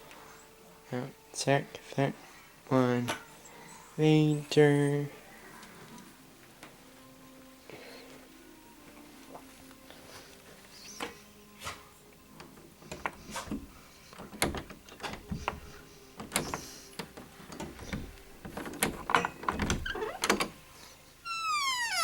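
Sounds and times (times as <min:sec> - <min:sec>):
knocks and clicks of handling things: 0:12.4 - 0:20.6.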